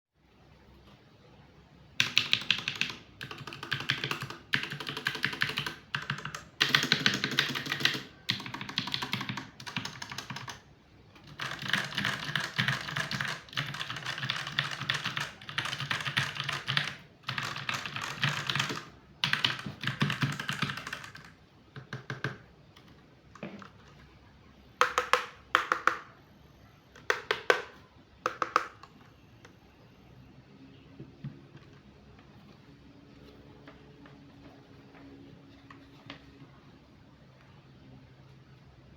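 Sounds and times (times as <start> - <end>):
typing on computer keyboard: 2.0 - 24.0, 24.8 - 26.2, 27.0 - 29.5.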